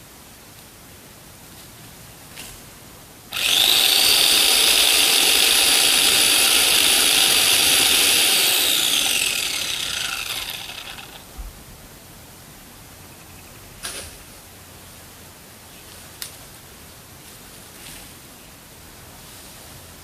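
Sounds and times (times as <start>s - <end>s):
electric chainsaw cutting wood: 3.3s - 11.3s.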